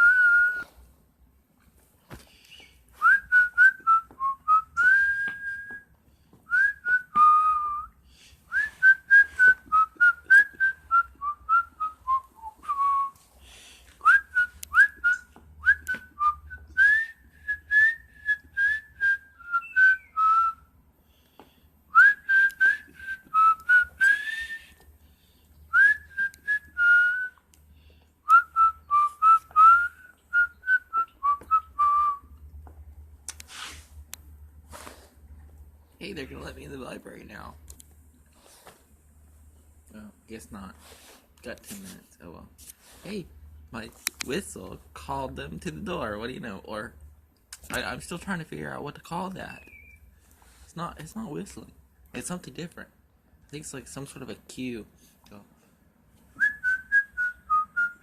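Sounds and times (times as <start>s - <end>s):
person whistling birdlike notes: 2.4s - 5.8s, 6.5s - 7.9s, 14.0s - 20.6s, 22.0s - 24.8s, 49.6s - 50.1s.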